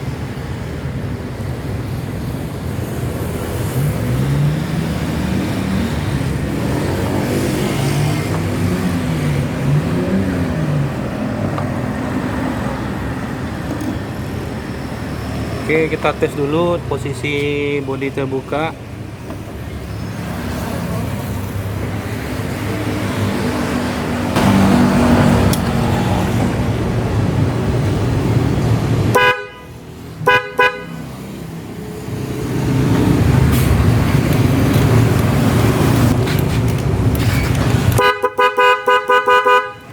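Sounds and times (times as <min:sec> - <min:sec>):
road traffic noise: 0:00.0 - 0:39.9
vehicle engine humming: 0:00.0 - 0:39.9
scooter horn toots: 0:29.1 - 0:31.1, 0:37.9 - 0:39.9.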